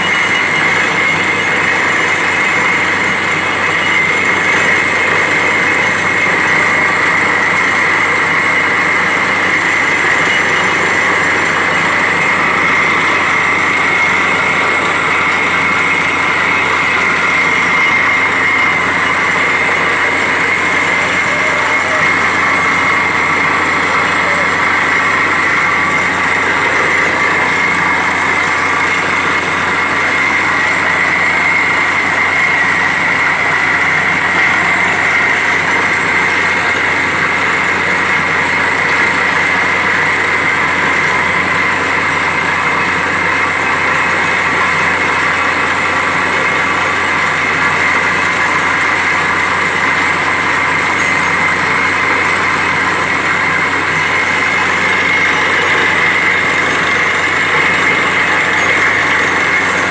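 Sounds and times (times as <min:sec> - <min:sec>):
drilling rig drone: 0:00.0 - 0:59.9.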